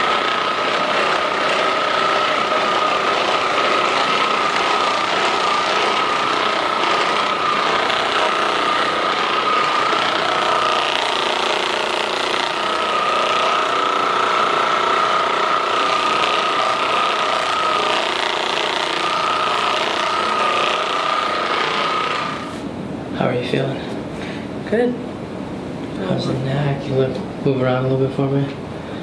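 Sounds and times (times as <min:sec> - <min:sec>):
massage gun motor buzz: 0:00.0 - 0:22.6.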